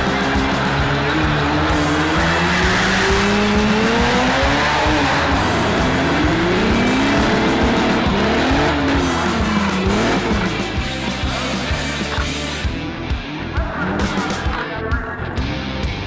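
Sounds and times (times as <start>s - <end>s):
car engine revving: 0.0s - 12.7s
background music with a beat: 0.0s - 16.0s.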